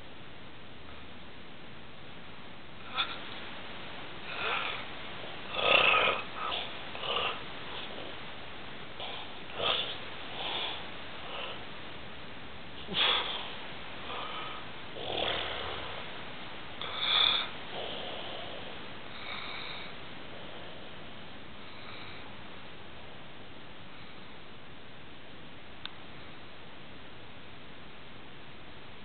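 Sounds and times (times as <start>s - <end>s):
man snoring: 4.2s - 4.8s, 5.5s - 8.1s, 9.0s - 11.6s, 14.1s - 16.0s, 16.8s - 18.6s.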